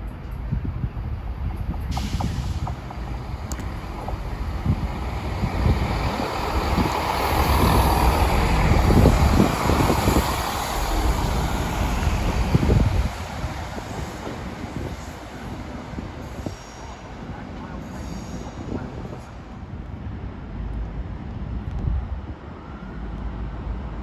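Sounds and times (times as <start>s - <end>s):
train rumbling past: 0.0s - 24.0s
wind buffeting microphone: 0.4s - 23.9s.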